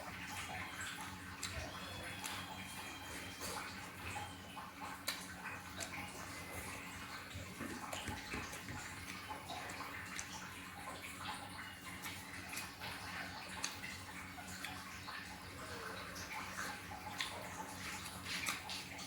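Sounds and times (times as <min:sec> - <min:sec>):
person chewing: 0:00.4 - 0:04.3, 0:04.9 - 0:10.3, 0:15.5 - 0:18.8.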